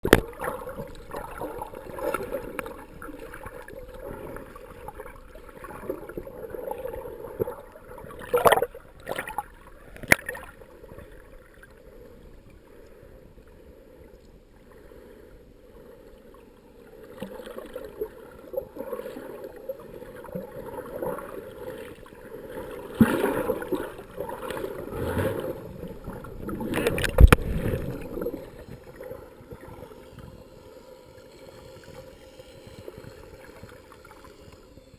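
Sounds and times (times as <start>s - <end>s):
regulator bubbles gurgling underwater: 0.0s - 12.0s, 16.3s - 32.1s
sharp underwater clicks: 10.0s - 10.5s.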